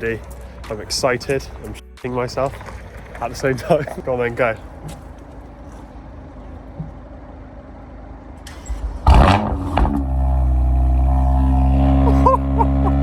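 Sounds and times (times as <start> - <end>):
car engine starting and idling: 0.0 - 13.0
starter motor cranking: 2.4 - 12.1.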